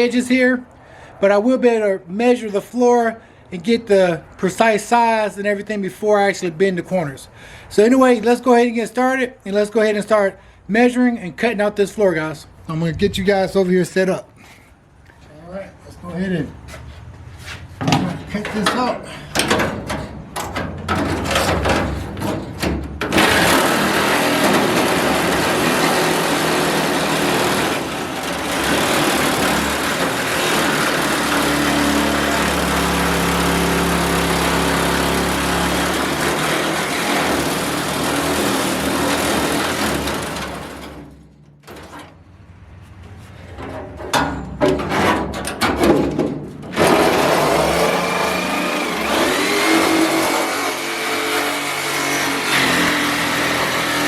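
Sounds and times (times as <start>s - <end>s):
power tool cutting sheet steel: 23.1s - 41.1s, 46.7s - 54.0s.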